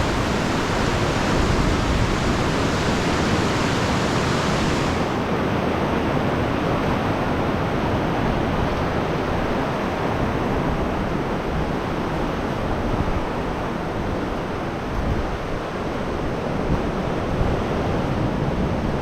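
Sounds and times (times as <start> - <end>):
ocean surf rushing through rocks: 0.0 - 5.7.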